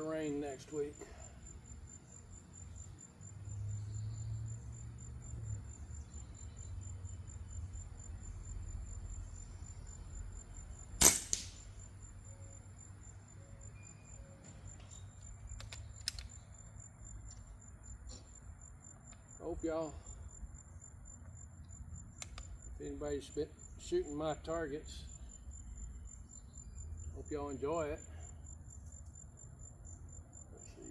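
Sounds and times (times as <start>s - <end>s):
high-pitched insect trill: 0.0s - 30.9s
gunshot: 11.0s - 11.6s.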